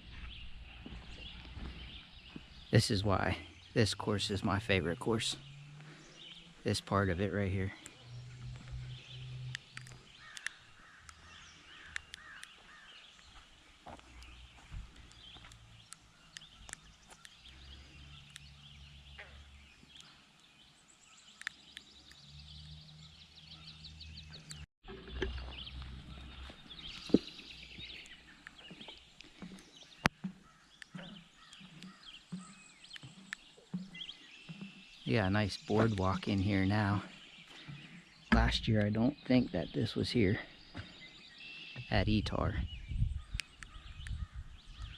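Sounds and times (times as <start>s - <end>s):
footsteps on wooden boardwalk: 0.0s - 2.8s, 7.7s - 20.2s, 25.3s - 39.7s, 40.5s - 41.9s
birds chirping: 0.0s - 44.9s
sharp clicks: 9.5s - 11.2s, 11.9s - 12.6s, 15.0s - 17.4s, 18.2s - 18.5s.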